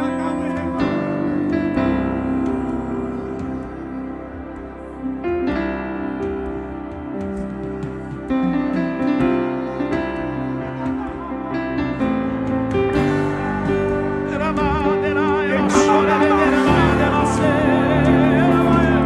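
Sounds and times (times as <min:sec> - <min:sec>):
piano chords: 0:00.0 - 0:19.0
person singing with vibrato: 0:13.0 - 0:19.0.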